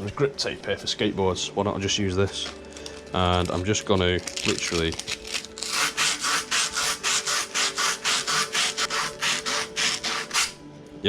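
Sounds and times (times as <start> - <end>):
grip tape scratching: 3.2 - 10.6.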